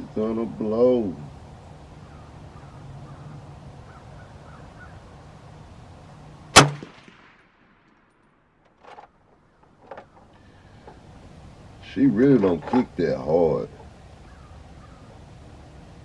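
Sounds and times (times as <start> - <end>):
rifle shot: 6.5 - 8.1.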